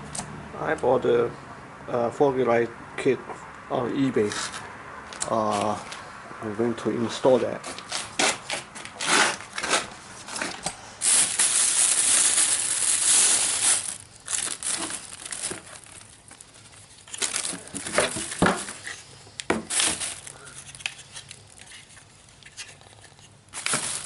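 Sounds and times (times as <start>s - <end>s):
plastic packaging crinkling: 11.0s - 24.0s.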